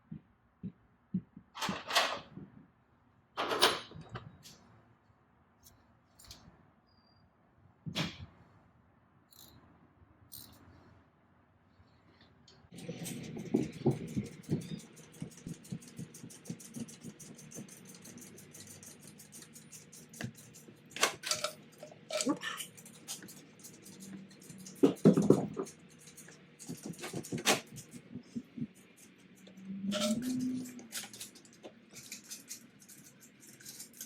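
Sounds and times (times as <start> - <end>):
hand tools ticking and clicking: 10.3 - 10.6, 12.7 - 34.0.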